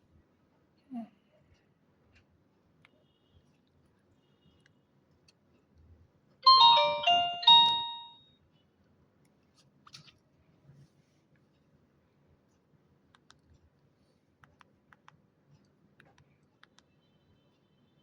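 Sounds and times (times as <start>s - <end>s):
mobile phone tone: 6.5s - 8.2s.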